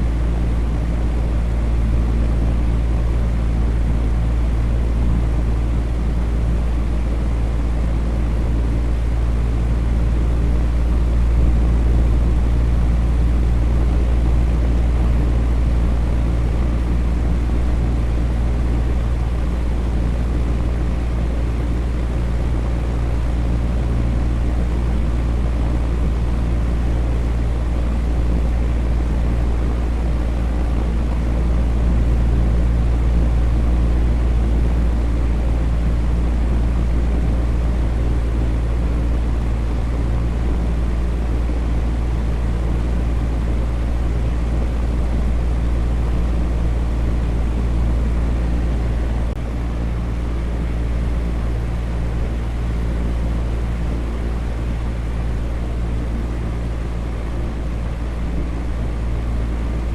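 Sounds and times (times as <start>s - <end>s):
fan rushing: 0.0s - 59.9s.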